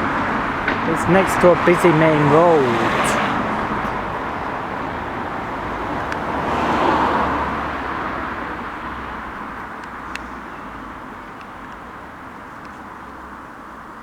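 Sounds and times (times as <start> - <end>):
car passing by: 0.0 - 11.2.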